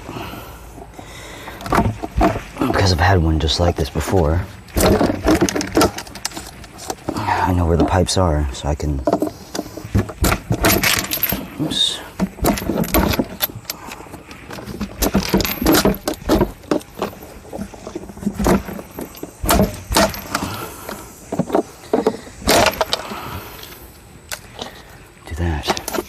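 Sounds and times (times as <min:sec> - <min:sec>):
tools clicking and rattling on plastic: 0:04.1 - 0:08.2, 0:09.0 - 0:24.8.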